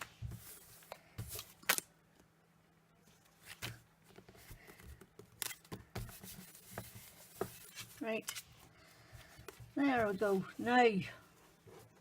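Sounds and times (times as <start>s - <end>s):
paper rustling: 3.1s - 12.0s.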